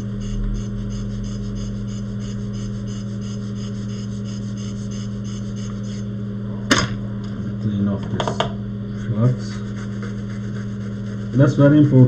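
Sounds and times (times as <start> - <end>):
electrical hum: 0.0 - 12.0.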